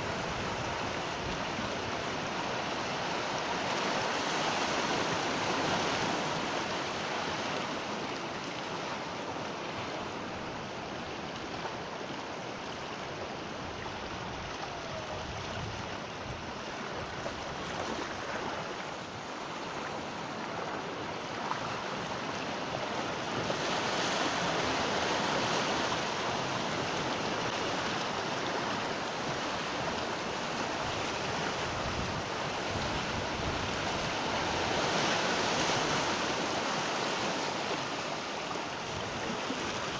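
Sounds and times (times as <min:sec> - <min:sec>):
sea waves breaking on shore: 0:00.0 - 0:39.9.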